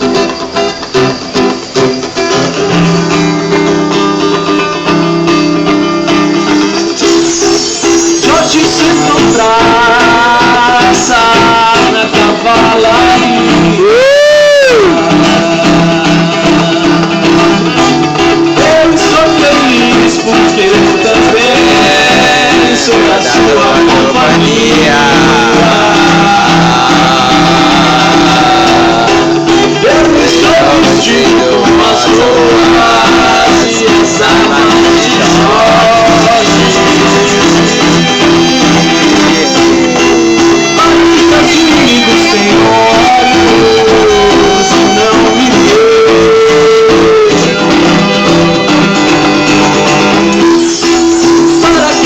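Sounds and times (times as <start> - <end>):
guitar playing: 0.0 - 52.0
swooping sung or slid melody: 6.5 - 52.0.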